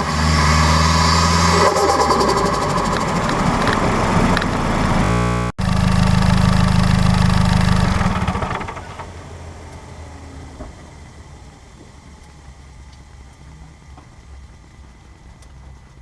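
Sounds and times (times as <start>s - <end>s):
car engine pulling hard: 0.0s - 11.9s.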